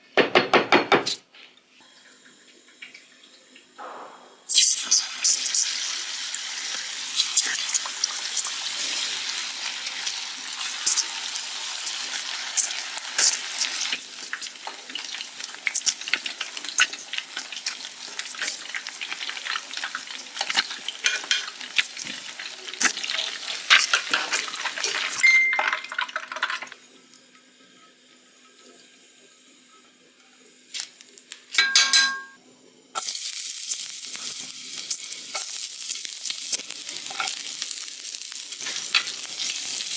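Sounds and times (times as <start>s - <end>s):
food sizzling in hot oil: 4.4s - 26.8s, 33.0s - 39.9s.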